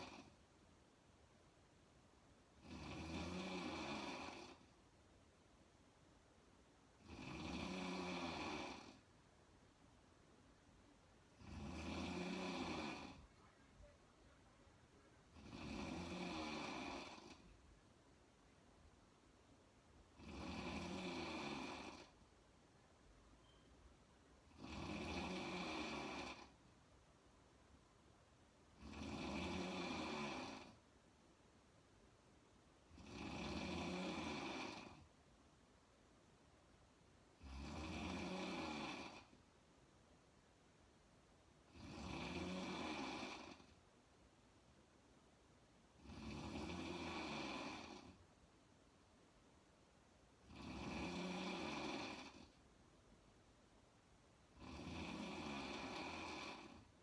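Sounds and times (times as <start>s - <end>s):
woman snoring: 0.0s - 0.4s, 2.6s - 4.7s, 7.0s - 9.1s, 11.3s - 17.6s, 20.2s - 22.2s, 24.5s - 26.6s, 28.8s - 30.8s, 32.9s - 35.1s, 37.4s - 39.4s, 41.7s - 43.8s, 46.0s - 48.2s, 50.4s - 52.6s, 54.5s - 56.9s.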